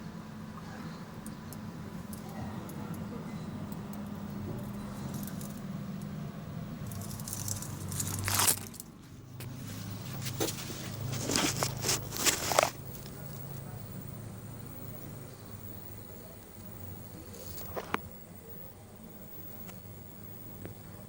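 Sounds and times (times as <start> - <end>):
scraping rustle: 6.9 - 13.2.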